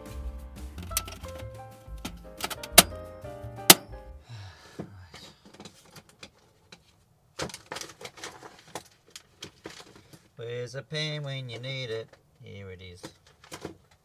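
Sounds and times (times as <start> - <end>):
music with bass and percussion: 0.0 - 4.2
rustling: 5.1 - 10.4.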